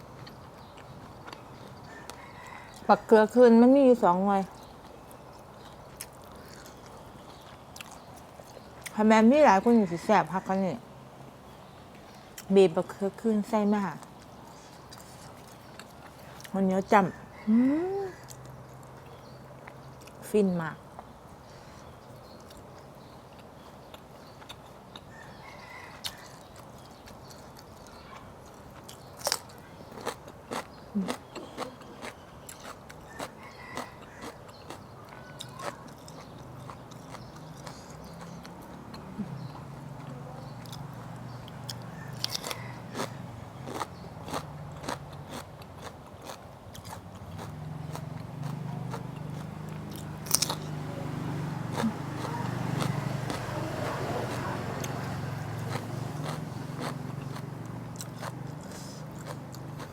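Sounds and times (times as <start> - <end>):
chewing with crisp crunches: 0.0 - 10.6, 11.5 - 59.9
biting clicks: 54.2 - 59.9.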